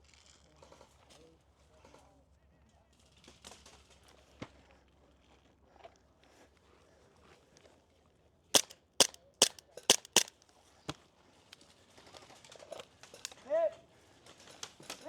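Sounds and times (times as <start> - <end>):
airsoft rifle shots: 8.6 - 10.3.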